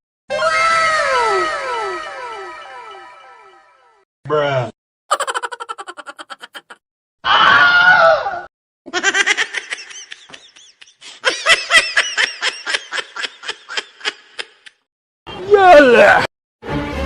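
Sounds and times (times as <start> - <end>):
rhythmic laughter: 5.1 - 6.8, 8.9 - 14.8
loud cry: 5.1 - 8.5.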